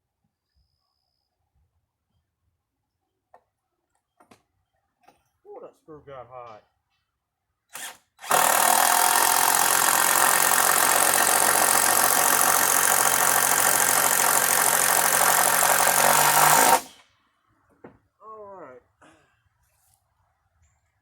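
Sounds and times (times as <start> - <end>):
electric drill motor running: 7.8 - 17.0.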